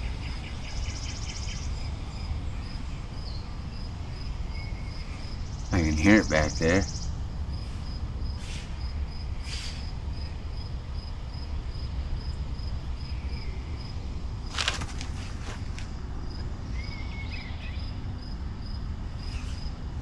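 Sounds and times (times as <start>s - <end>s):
insect chirping: 0.0s - 19.8s
scraping or rustling bursts: 14.5s - 16.0s.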